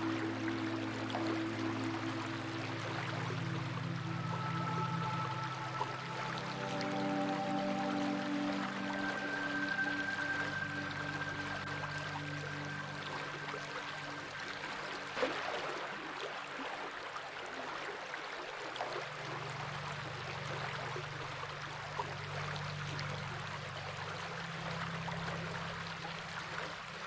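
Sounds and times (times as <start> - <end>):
low steady drone: 0.0 - 16.2, 19.0 - 27.0
flowing water: 0.0 - 27.0
water splash: 14.8 - 16.8.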